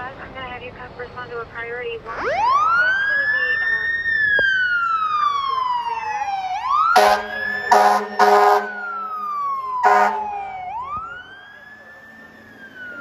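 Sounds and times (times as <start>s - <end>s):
fire engine siren wailing: 2.1s - 13.0s
air horn blasts: 7.0s - 9.2s, 9.8s - 10.3s.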